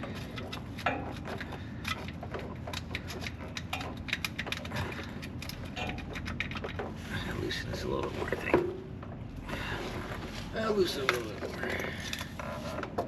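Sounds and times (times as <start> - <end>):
tools clicking and knocking: 0.0 - 7.0.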